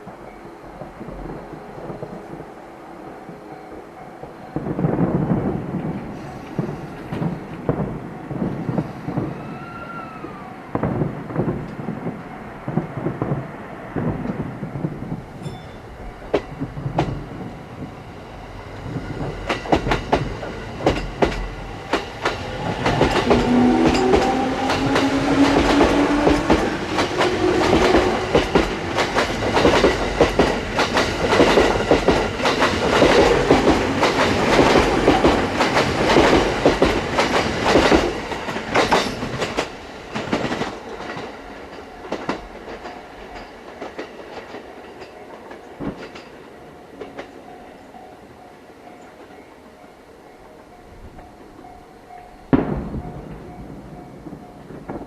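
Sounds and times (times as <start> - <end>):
train wheels clattering over rail joints: 18.9 - 47.5
train wheel squeal: 22.8 - 28.7.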